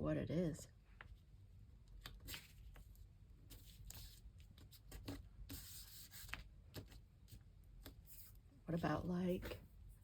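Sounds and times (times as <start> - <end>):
paper rustling: 1.9 - 9.5.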